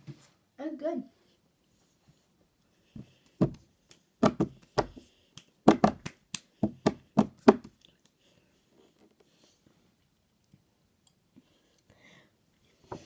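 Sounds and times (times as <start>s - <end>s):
sharp knocks and taps: 3.4s - 3.6s, 4.2s - 5.0s, 5.7s - 7.7s.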